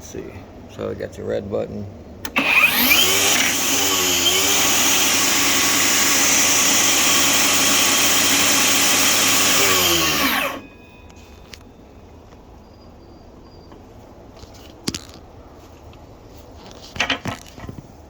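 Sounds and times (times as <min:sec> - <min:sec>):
table saw blade spinning: 0:02.3 - 0:10.6.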